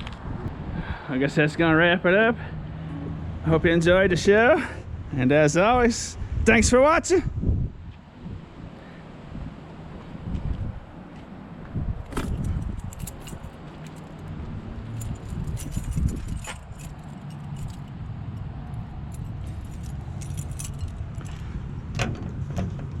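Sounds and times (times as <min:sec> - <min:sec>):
keys jingling: 0:12.1 - 0:21.5.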